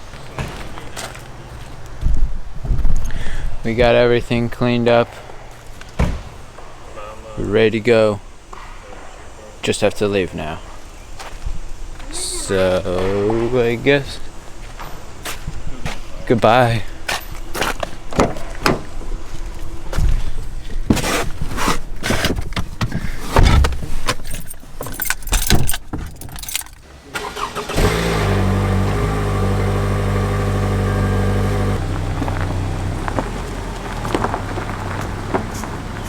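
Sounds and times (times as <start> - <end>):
van engine starting and idling: 26.9 - 36.0.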